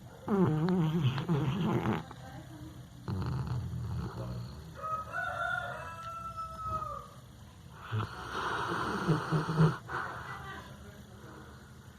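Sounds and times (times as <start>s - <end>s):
dog snoring: 0.3s - 2.2s, 3.0s - 4.8s, 7.8s - 10.0s.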